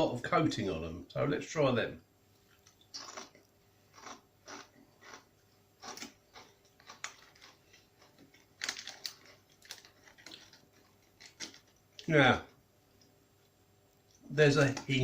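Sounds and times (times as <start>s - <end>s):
chips crunching: 2.6s - 12.1s.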